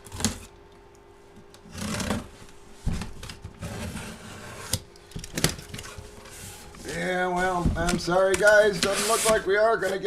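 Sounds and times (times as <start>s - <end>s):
cardboard and packaging rustling: 5.3s - 10.0s.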